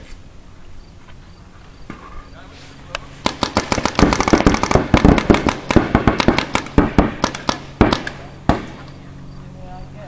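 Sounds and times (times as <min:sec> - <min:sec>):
paintball markers firing: 0:03.2 - 0:09.0.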